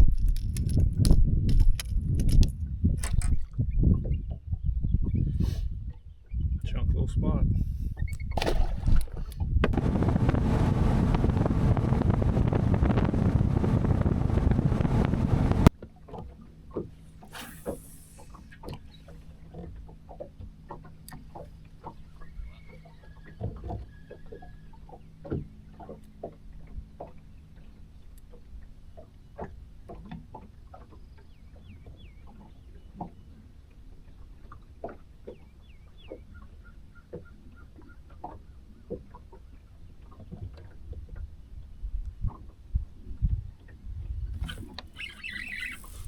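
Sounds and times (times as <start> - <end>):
heavy wind buffeting microphone: 0.0 - 15.7
bird chirps: 44.4 - 46.0.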